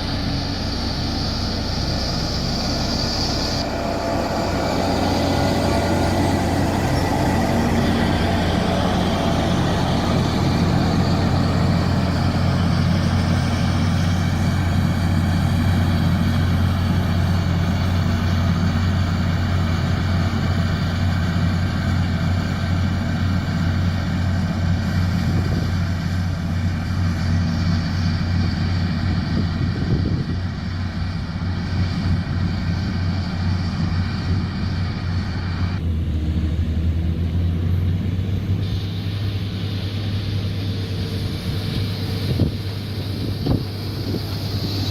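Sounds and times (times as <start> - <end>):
bulldozer diesel engine drone: 0.0 - 44.9.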